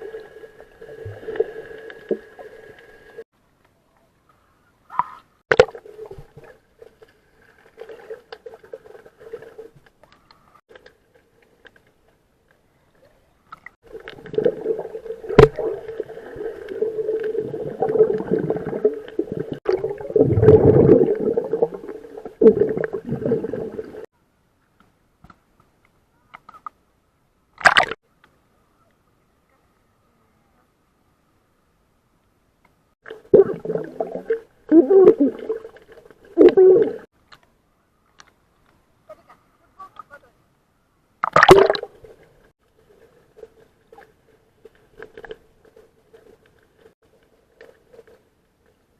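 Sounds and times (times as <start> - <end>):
muffled water sloshing and gurgling: 13.8 - 24.1, 33.0 - 37.1.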